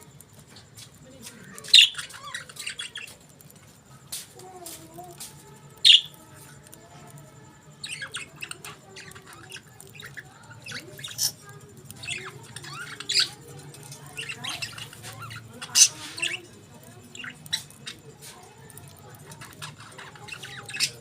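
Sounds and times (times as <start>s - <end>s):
budgerigars chirping: 1.5s - 3.2s, 5.8s - 6.2s, 7.8s - 18.3s, 19.0s - 21.0s.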